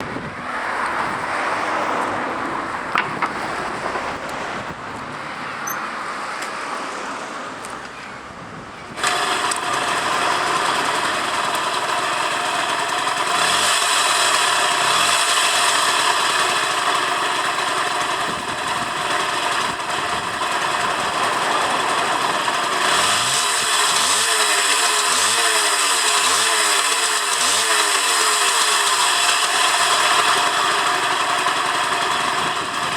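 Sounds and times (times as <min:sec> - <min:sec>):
two-stroke scooter engine running: 0:08.9 - 0:32.9.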